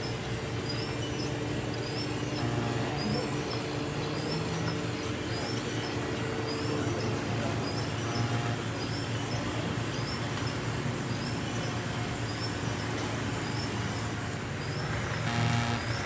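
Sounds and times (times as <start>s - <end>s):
tram motor and rolling noise: 0.0s - 16.0s.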